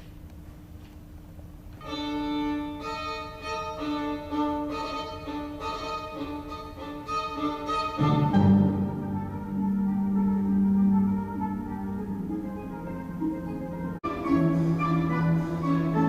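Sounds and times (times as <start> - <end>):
violin-like slow sustained notes: 1.8 - 16.0
low note: 7.9 - 16.0.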